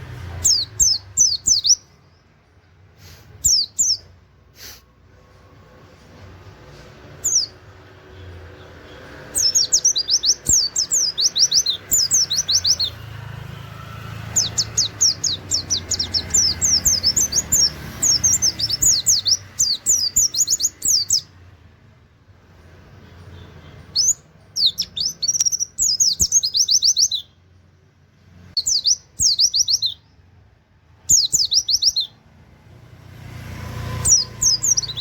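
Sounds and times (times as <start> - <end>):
bird singing rapid high notes: 0.2 - 2.4, 3.2 - 4.2, 7.1 - 21.5, 23.0 - 27.6, 28.6 - 30.4, 31.0 - 32.3, 33.7 - 35.0.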